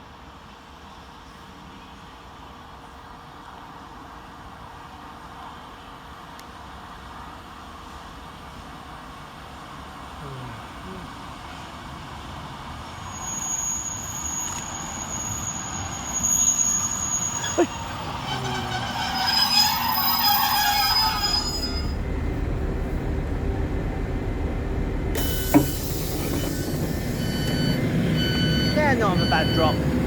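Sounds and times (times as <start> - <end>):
passenger train running: 0.6 - 30.0
wheel squeal: 12.9 - 22.2, 25.2 - 29.8.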